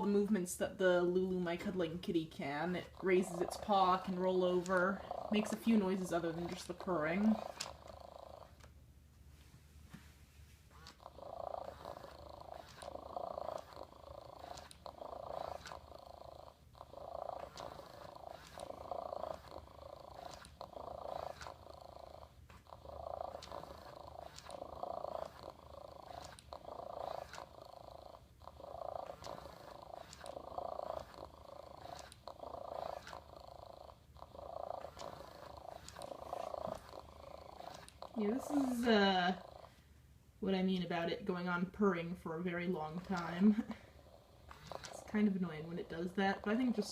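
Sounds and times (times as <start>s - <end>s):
robotic cat electronic purr: 0.0s - 8.7s, 10.7s - 39.8s, 40.5s - 46.9s
faint clicks: 10.8s - 15.9s, 22.5s - 27.5s, 29.0s - 33.4s, 42.9s - 43.8s.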